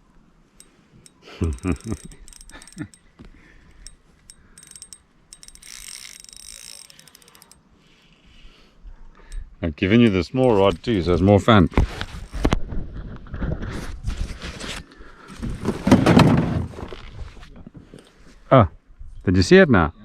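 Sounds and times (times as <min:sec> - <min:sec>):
fishing reel ratcheting and whirring: 0:00.6 - 0:08.6, 0:10.0 - 0:12.6.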